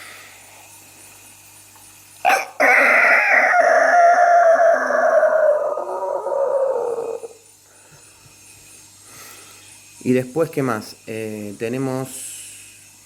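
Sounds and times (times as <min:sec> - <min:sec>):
man imitating rooster crow: 0:02.3 - 0:07.4.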